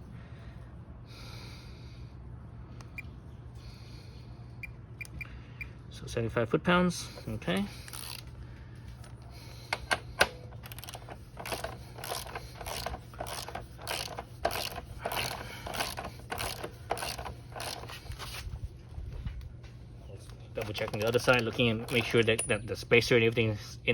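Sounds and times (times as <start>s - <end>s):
torque wrench ratcheting: 7.8s - 8.3s, 9.8s - 18.1s, 20.6s - 22.4s.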